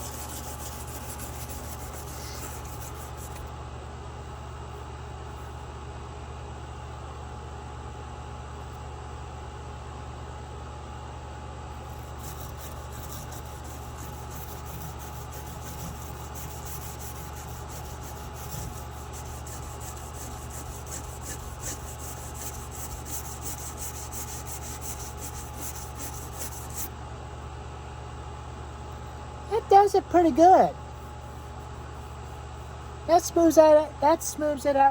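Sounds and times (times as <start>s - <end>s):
abrasive tool rubbing metal: 0.0s - 3.4s, 11.9s - 26.9s
steady low hum: 0.0s - 34.9s.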